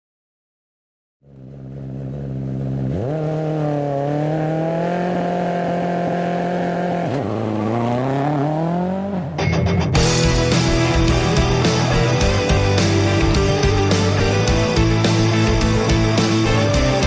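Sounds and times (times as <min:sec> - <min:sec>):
car engine revving: 0:01.2 - 0:17.0.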